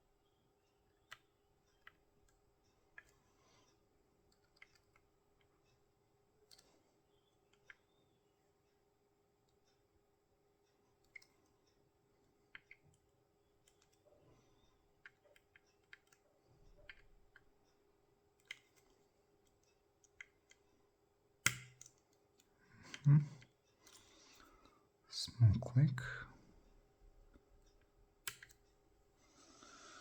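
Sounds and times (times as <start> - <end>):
small metallic clicks of lock picking: 4.3 - 5.5, 6.4 - 6.7, 7.5 - 7.9, 11.0 - 11.8, 12.5 - 13.0, 13.6 - 14.0, 15.0 - 17.5, 18.4 - 20.6, 21.4 - 24.1, 27.7 - 28.7.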